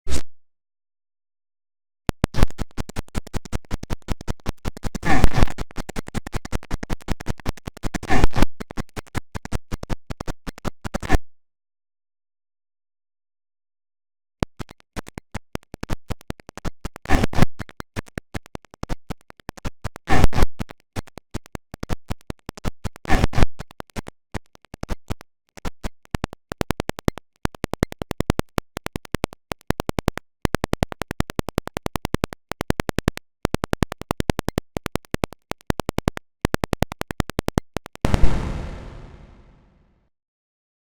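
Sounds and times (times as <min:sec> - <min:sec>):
glitchy stuttering clicks: 0:02.2 - 0:11.0, 0:21.1 - 0:39.7.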